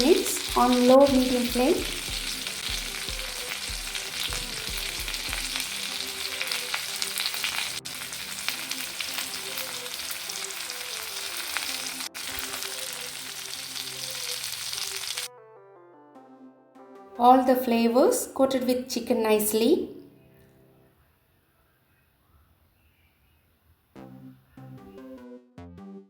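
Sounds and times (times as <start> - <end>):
chicken sizzling in a pan: 0.0 - 15.3.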